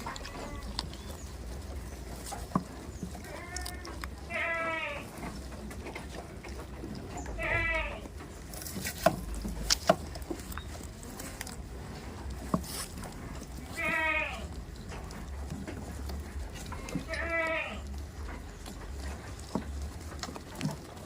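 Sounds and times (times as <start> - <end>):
goat bleating: 0.0 - 1.2, 3.2 - 5.4, 7.2 - 8.2, 13.5 - 14.7, 16.6 - 18.0.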